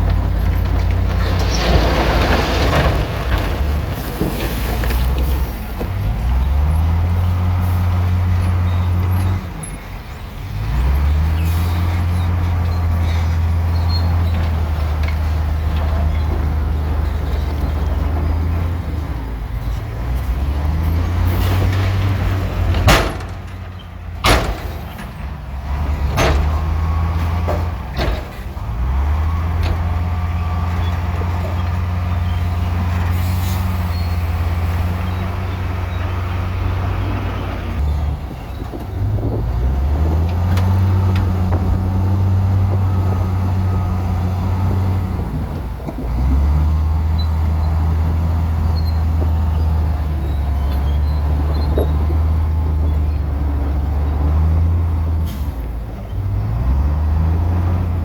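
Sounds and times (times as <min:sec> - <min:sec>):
heavy diesel engine droning: 0:00.0 - 0:58.0.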